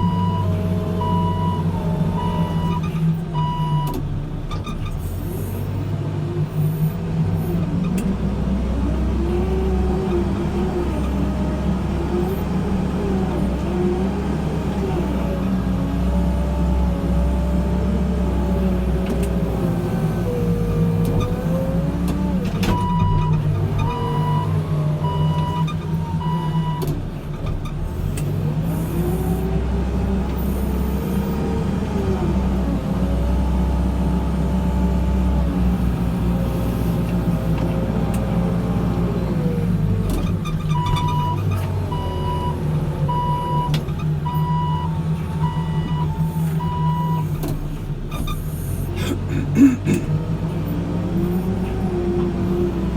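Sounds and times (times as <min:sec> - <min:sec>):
reversing alarm beeping: 0:00.0 - 0:02.8, 0:40.8 - 0:47.3
diesel engine working under load: 0:00.0 - 0:52.9.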